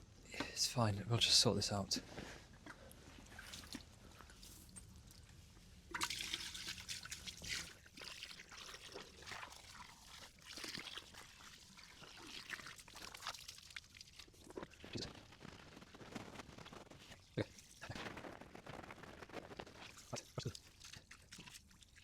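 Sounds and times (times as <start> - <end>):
water pouring into a drain: 5.9 - 16.2.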